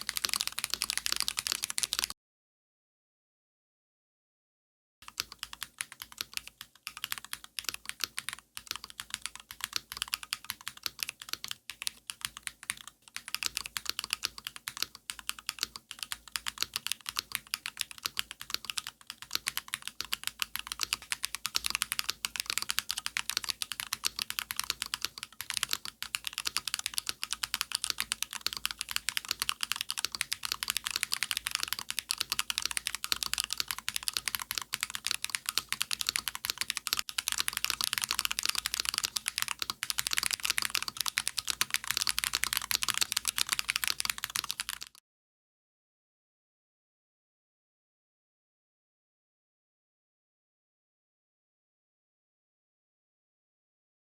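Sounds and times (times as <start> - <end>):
mechanical keyboard typing: 0.0 - 2.2, 5.0 - 45.0.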